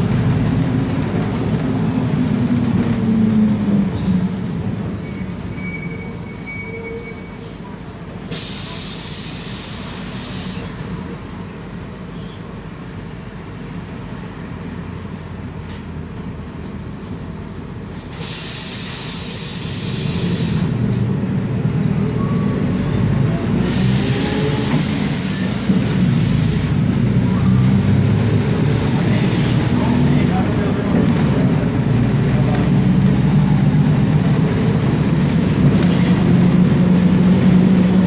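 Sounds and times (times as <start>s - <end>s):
bus diesel engine rumble: 0.0s - 38.0s
hiss: 8.3s - 10.8s, 18.2s - 20.8s.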